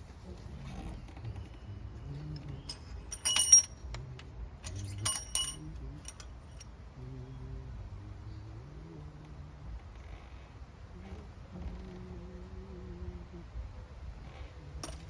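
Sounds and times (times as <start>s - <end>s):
metal engine parts clinking: 2.1s - 6.8s, 14.8s - 15.0s.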